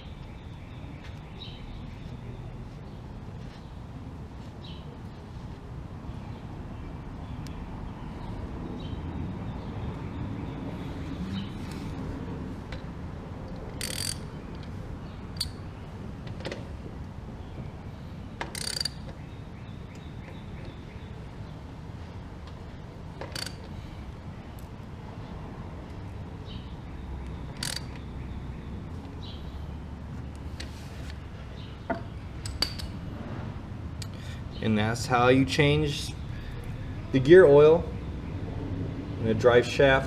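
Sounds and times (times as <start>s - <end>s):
metallic clicks and rattles: 13.5s - 15.6s, 18.4s - 19.2s, 23.2s - 23.8s, 27.5s - 28.1s, 31.9s - 33.0s.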